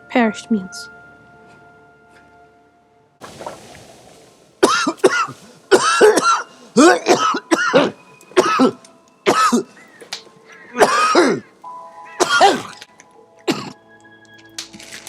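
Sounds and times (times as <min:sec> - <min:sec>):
man coughing: 0:04.6 - 0:09.7, 0:10.8 - 0:11.5, 0:12.2 - 0:12.8.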